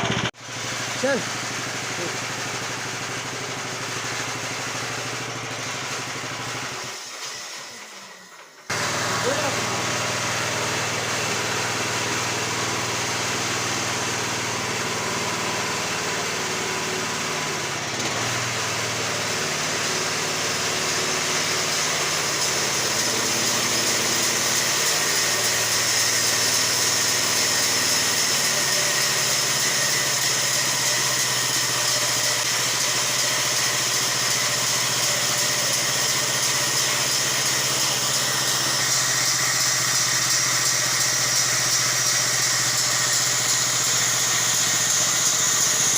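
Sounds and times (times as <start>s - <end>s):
sawmill engine running: 0.0s - 45.9s.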